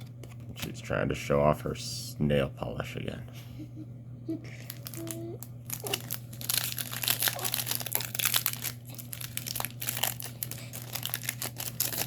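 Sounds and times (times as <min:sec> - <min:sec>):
wrappers crinkling: 0:04.5 - 0:12.0.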